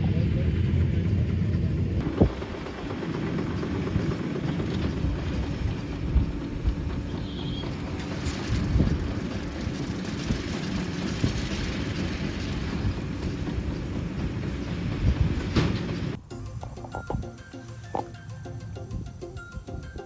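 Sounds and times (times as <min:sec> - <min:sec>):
harvest machinery rumble and clatter: 0:00.0 - 0:18.2
quiet music: 0:16.2 - 0:20.0.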